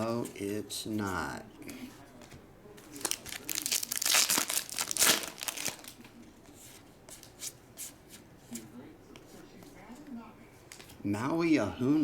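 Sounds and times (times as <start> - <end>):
wrapper crinkling and tearing: 3.0 - 6.0.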